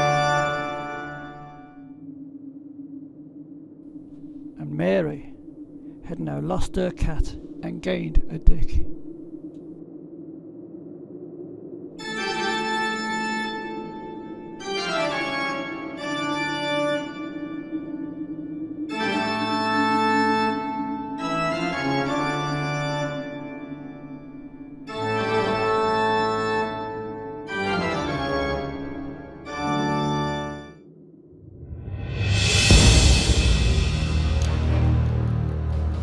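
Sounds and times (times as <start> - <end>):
organ chords over drone: 0.0 - 1.8, 12.0 - 30.8, 32.3 - 36.0.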